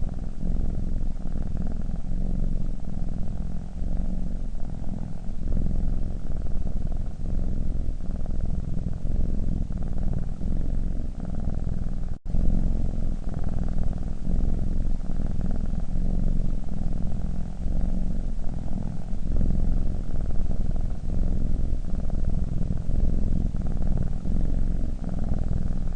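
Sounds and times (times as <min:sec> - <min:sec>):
cat purring: 0:00.0 - 0:25.9.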